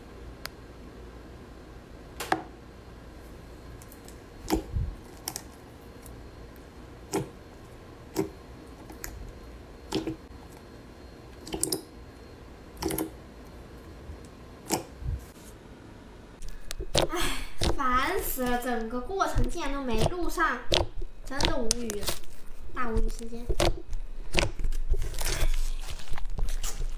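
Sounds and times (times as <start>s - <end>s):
slime clicking and popping: 19.4s - 22.2s.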